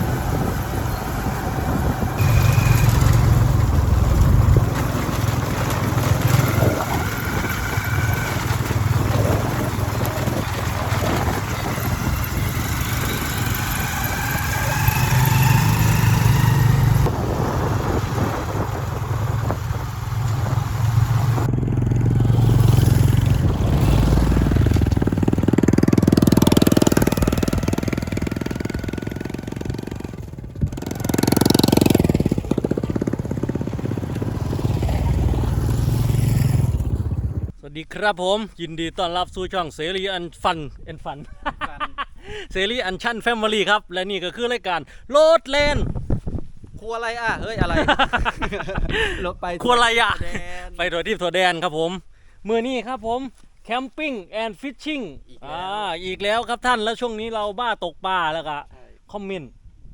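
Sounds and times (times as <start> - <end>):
motorcycle engine accelerating: 0.0 - 37.6.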